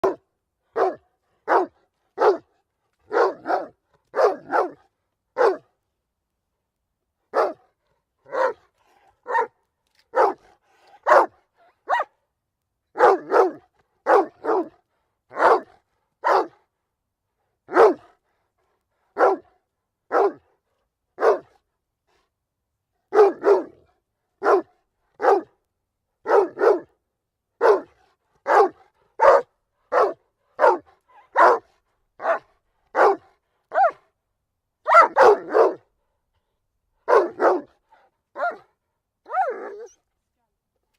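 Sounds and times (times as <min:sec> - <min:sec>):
dog barking: 0:00.0 - 0:02.5, 0:03.1 - 0:05.7, 0:07.3 - 0:07.7, 0:08.3 - 0:08.6, 0:09.2 - 0:12.2, 0:13.0 - 0:16.6, 0:17.7 - 0:18.1, 0:19.2 - 0:20.5, 0:21.2 - 0:21.6, 0:23.1 - 0:23.8, 0:24.4 - 0:25.5, 0:26.2 - 0:26.9, 0:27.6 - 0:34.1, 0:34.8 - 0:35.9, 0:37.0 - 0:38.7, 0:39.3 - 0:40.0.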